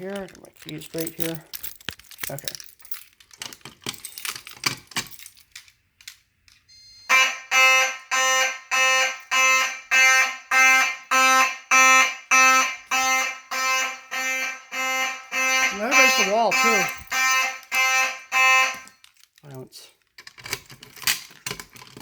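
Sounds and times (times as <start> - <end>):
fire alarm horn blasting: 6.7 - 19.1
pull station clicks and rattling: 20.2 - 22.0.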